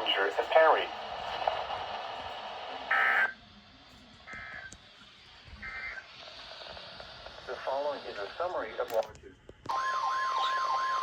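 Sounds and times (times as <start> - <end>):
radio receiver hiss: 0.0 - 3.3, 4.2 - 9.3.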